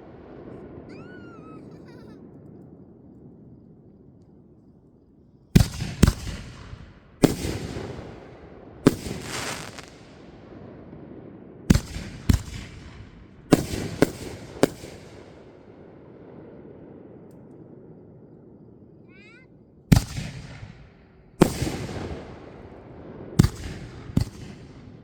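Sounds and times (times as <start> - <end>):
fireworks bangs: 0.0 - 3.7, 5.5 - 17.3, 19.0 - 25.0.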